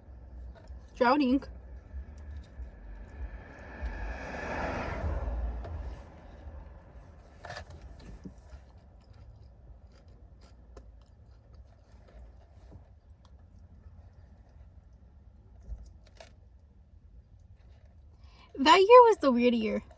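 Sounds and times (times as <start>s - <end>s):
chewing and crunching: 0.0s - 3.9s, 6.8s - 18.5s.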